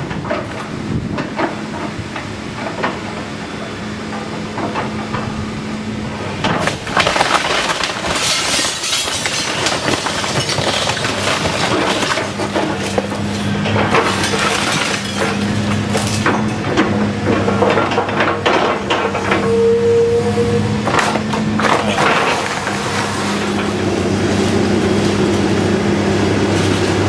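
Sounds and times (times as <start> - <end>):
heavy machine engine hum: 0.0 - 27.0
wood and glass crashing: 6.4 - 13.2, 13.8 - 16.6, 21.0 - 23.7.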